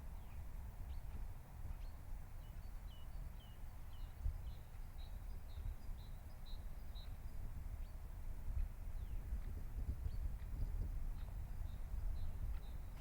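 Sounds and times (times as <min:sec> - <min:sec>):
low rumble on microphone: 0:07.6 - 0:13.0.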